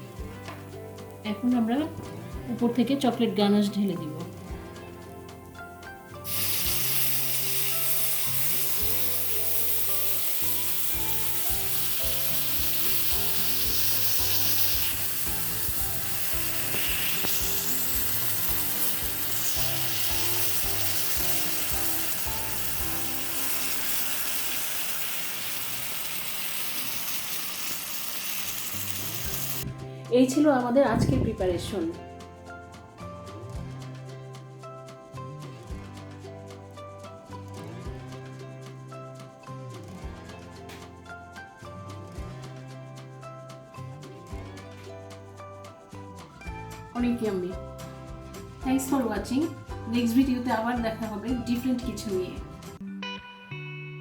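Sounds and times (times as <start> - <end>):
light background music: 0.0 - 54.0
hot plate sizzling: 2.6 - 29.7.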